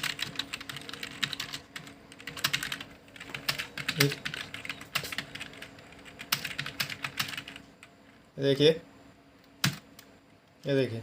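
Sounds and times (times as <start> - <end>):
computer keyboard clicks: 0.0 - 7.6, 9.4 - 10.1.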